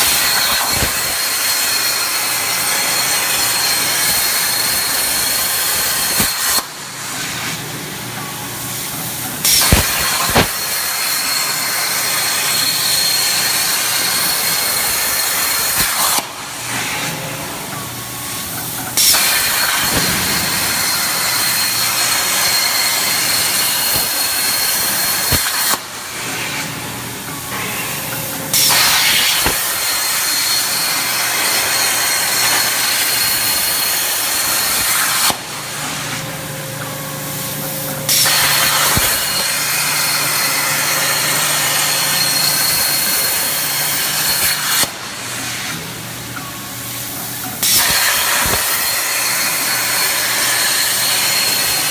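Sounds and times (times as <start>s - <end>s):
plasma cutter arc hissing: 0.0s - 7.8s, 8.7s - 36.4s, 37.2s - 45.9s, 46.9s - 51.9s.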